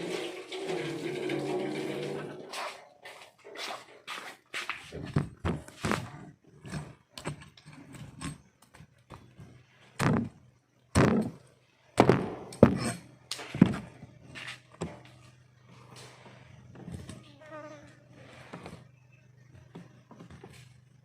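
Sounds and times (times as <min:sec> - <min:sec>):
faint low hum: 0:04.9 - 0:21.0.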